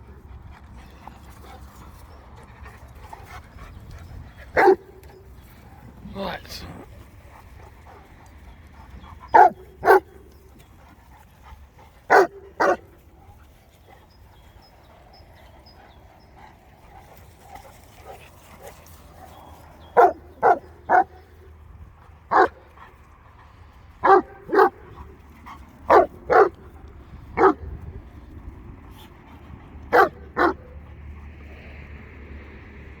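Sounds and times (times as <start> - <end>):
dog barking: 4.6 - 4.8, 9.3 - 10.1, 12.1 - 12.8, 20.0 - 21.2, 22.3 - 22.6, 24.0 - 24.8, 25.9 - 26.6, 27.4 - 27.6, 29.9 - 30.7.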